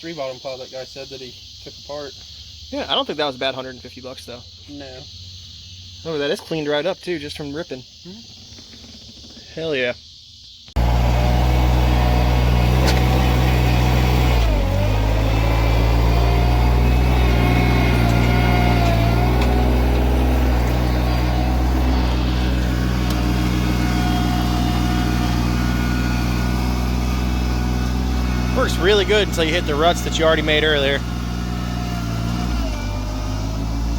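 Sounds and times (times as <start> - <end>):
tractor engine running under load: 10.8 - 33.9.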